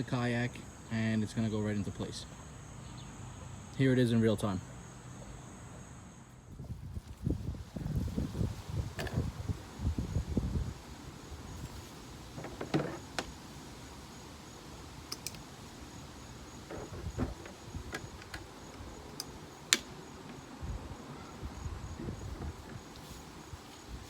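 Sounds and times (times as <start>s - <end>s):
high insect trill: 0.0s - 24.0s
plastic kayak clicks and knocks: 12.4s - 13.3s.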